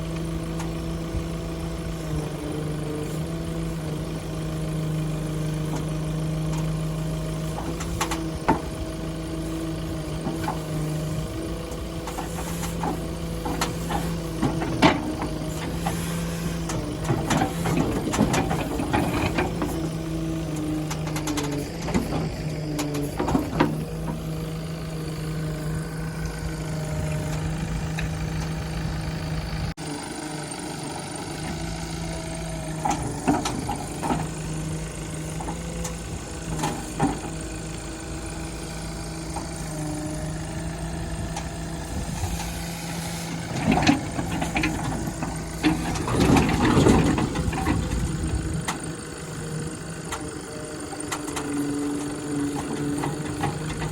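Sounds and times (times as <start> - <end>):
diesel engine running: 0.0 - 53.9
metallic clanks and rattles: 12.0 - 24.3, 32.8 - 34.5, 43.2 - 48.8, 51.0 - 53.9.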